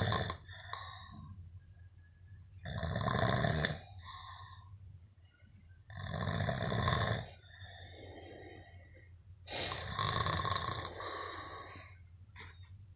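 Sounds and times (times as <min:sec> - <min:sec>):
man snoring: 0:00.0 - 0:00.5, 0:02.6 - 0:03.8, 0:05.9 - 0:07.3, 0:09.5 - 0:11.7
quiet breathing: 0:00.0 - 0:01.6, 0:03.7 - 0:05.5, 0:07.1 - 0:12.7.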